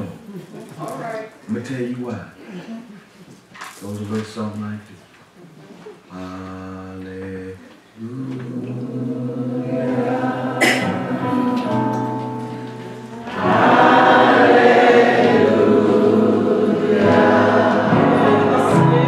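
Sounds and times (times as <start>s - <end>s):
choir and congregation singing: 8.0s - 19.0s
long held sung notes: 8.0s - 19.0s.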